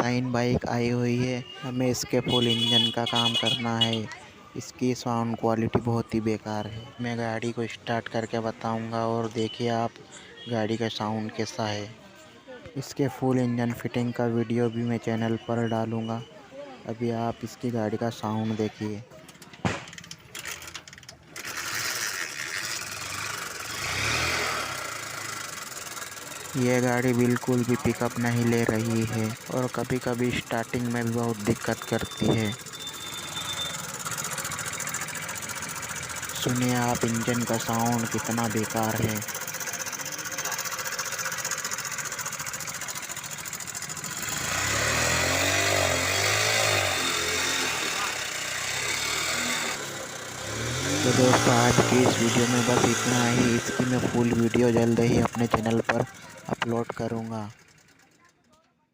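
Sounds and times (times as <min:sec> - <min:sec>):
motorcycle engine running harshly: 0:01.5 - 0:04.0, 0:20.0 - 0:58.4.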